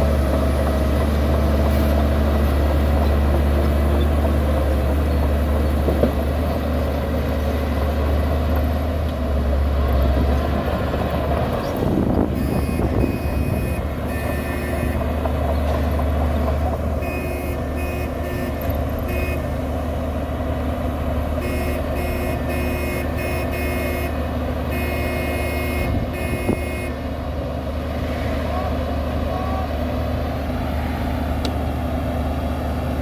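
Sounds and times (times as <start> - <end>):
diesel machine engine drone: 0.0 - 33.0
reversing alarm beeps: 12.4 - 15.0.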